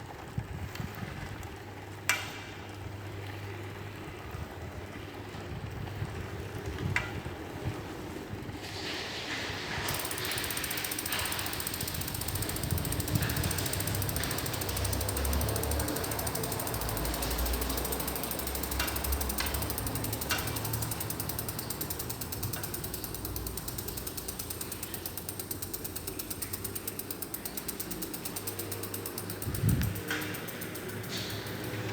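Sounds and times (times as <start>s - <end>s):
bike wheel ratcheting: 9.8s - 31.9s
sharp spoke clicks: 9.9s - 31.9s.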